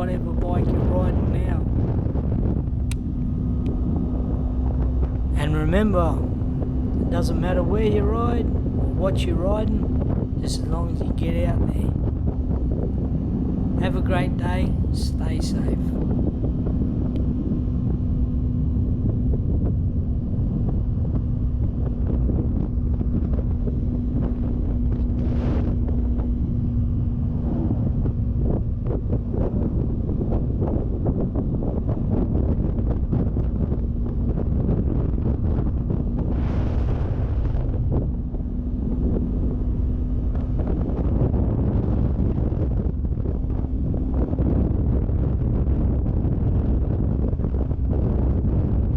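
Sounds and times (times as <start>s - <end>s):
motorcycle engine droning: 0.0s - 48.9s
wind buffeting microphone: 0.0s - 48.9s
motorcycle engine running: 0.2s - 15.1s.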